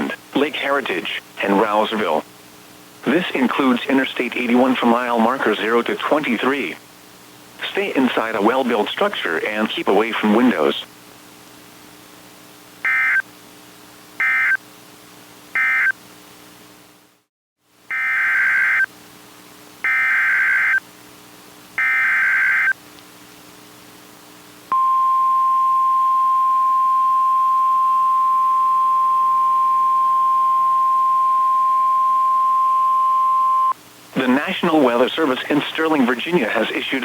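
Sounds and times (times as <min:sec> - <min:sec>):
steady warning alarm tone: 0:12.9 - 0:13.2, 0:14.2 - 0:14.6, 0:15.6 - 0:15.9, 0:17.9 - 0:18.9, 0:19.8 - 0:20.8, 0:21.8 - 0:22.8, 0:24.7 - 0:33.8
data burst tones: 0:21.8 - 0:22.7.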